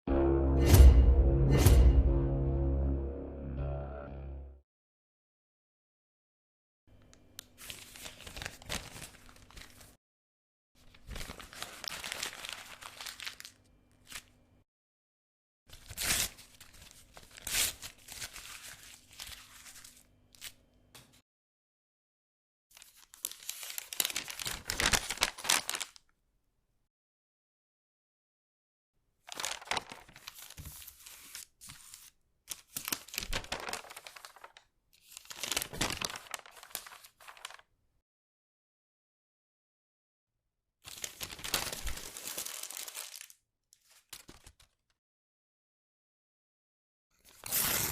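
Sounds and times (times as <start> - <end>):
paper pages flipping: 7.4 - 10.0, 10.8 - 14.4, 15.7 - 21.1, 22.8 - 26.0, 29.3 - 37.7, 40.9 - 44.9, 47.2 - 47.9
paper crumpling: 7.6 - 10.0, 10.9 - 14.3, 15.7 - 20.6, 22.8 - 26.0, 29.3 - 37.7, 40.9 - 44.9.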